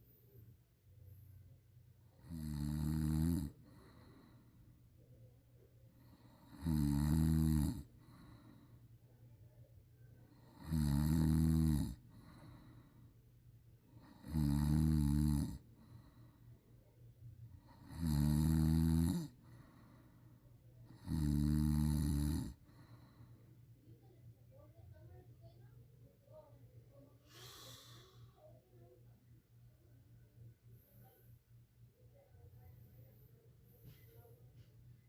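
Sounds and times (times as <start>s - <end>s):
person snoring loudly: 2.2s - 4.3s, 6.1s - 8.4s, 10.4s - 12.6s, 14.0s - 16.2s, 17.6s - 19.8s, 20.9s - 23.0s.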